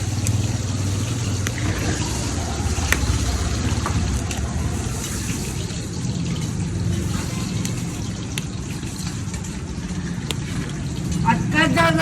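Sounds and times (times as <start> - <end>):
low rumble: 0.0 - 7.1.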